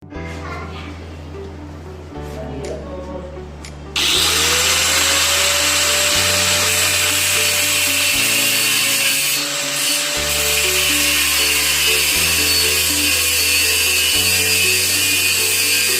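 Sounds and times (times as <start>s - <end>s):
grinder cutting steel pipe: 4.0s - 15.9s.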